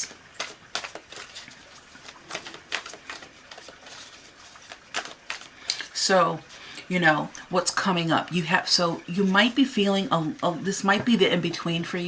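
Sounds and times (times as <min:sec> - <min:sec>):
cards rustling: 0:00.0 - 0:05.9.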